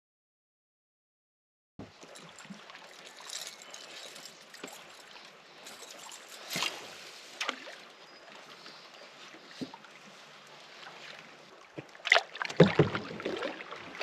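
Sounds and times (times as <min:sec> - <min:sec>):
paddle splashes and knocks: 0:09.4 - 0:14.0.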